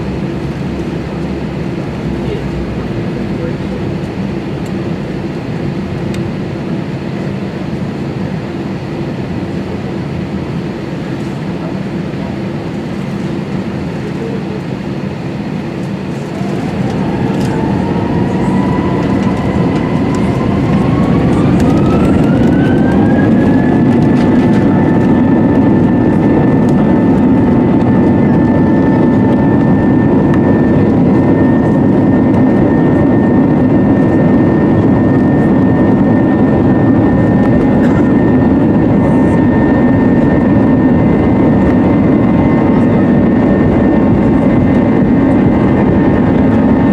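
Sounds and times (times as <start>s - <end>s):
jet engines spooling up: 0.0s - 46.9s
rising engine whine: 0.0s - 46.9s
runway noise: 15.8s - 46.9s.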